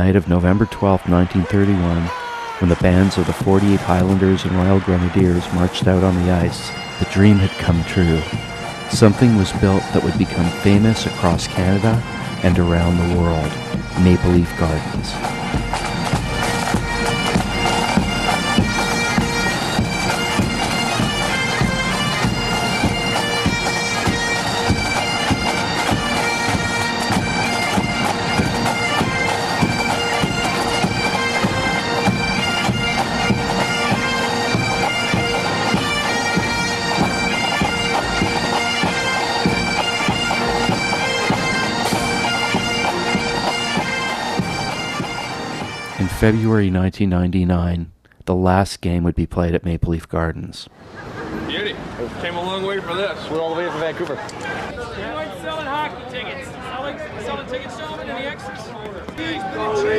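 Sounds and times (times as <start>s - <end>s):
bagpipes playing quick tune: 0.0s - 46.5s.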